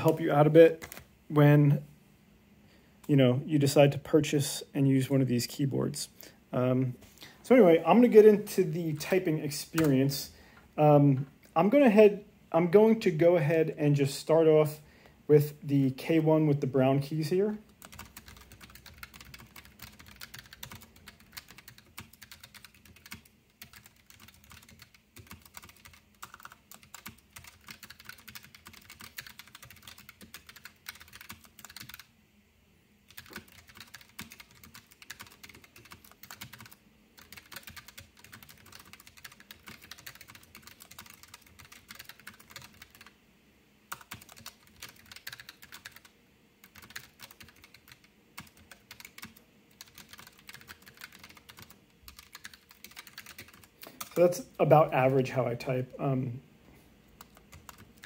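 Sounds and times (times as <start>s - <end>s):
mechanical keyboard typing: 17.8s - 32.1s, 33.1s - 43.1s, 43.9s - 54.2s, 57.2s - 58.0s.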